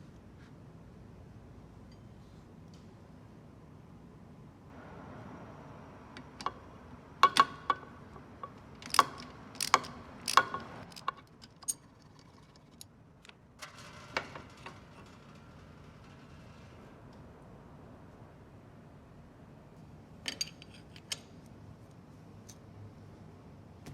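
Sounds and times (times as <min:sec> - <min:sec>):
metal tools clinking: 0:07.2 - 0:12.8, 0:20.3 - 0:21.4.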